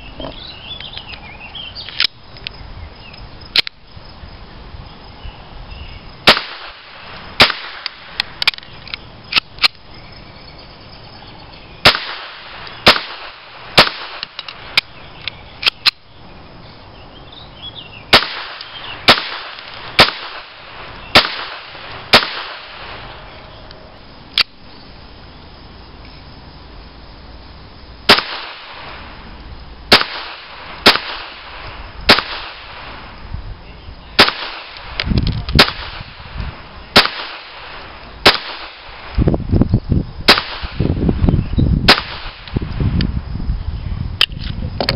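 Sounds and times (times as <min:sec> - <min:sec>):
pistol shots: 0:06.2 - 0:08.2, 0:11.8 - 0:14.6, 0:18.1 - 0:23.1, 0:28.1 - 0:29.0, 0:29.9 - 0:32.9, 0:34.2 - 0:35.0, 0:35.6 - 0:36.2, 0:36.9 - 0:39.0, 0:40.3 - 0:40.8, 0:41.9 - 0:42.5.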